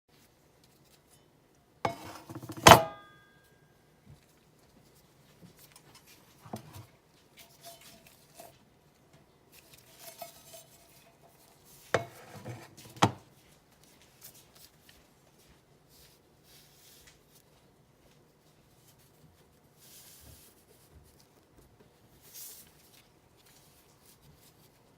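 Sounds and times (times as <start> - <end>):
frying pan knocks and clinks: 1.9 - 3.1.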